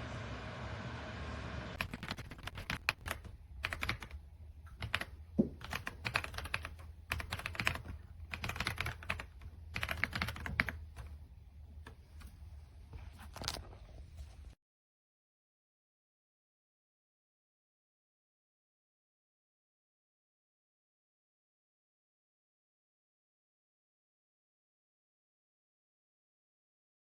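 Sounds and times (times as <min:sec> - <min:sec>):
mechanical keyboard typing: 0:01.8 - 0:11.2.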